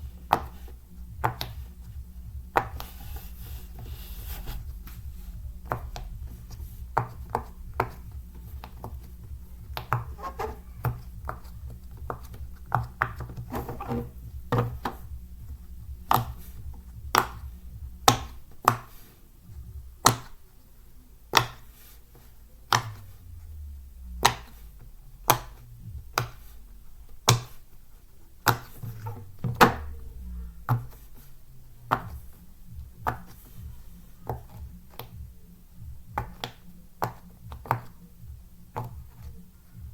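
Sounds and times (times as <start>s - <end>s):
low steady hum: 0.0s - 39.9s.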